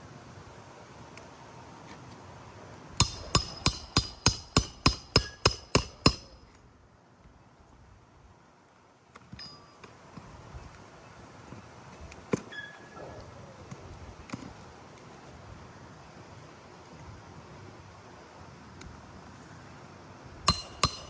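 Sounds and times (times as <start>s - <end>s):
hammer striking metal: 3.0s - 6.5s, 20.5s - 21.0s.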